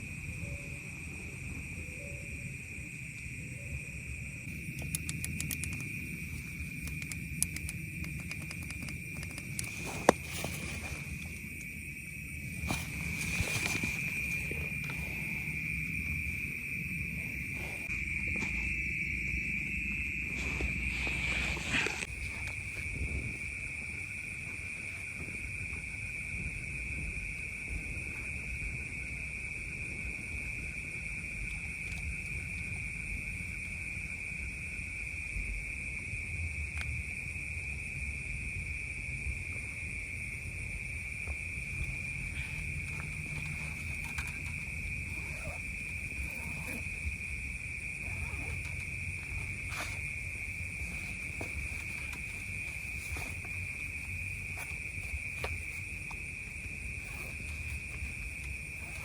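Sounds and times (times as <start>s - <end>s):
night insect chorus drone: 0.0s - 59.0s.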